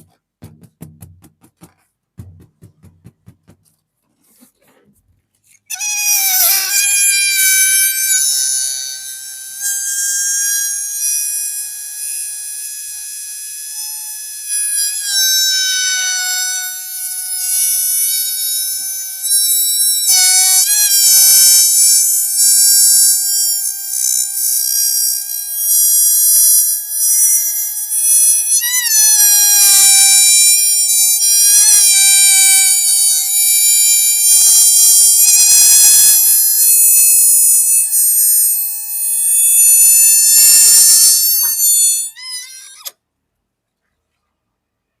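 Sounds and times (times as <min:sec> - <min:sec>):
balloon squealing: 0:05.7 - 0:10.6, 0:14.8 - 0:25.9, 0:27.0 - 0:43.0.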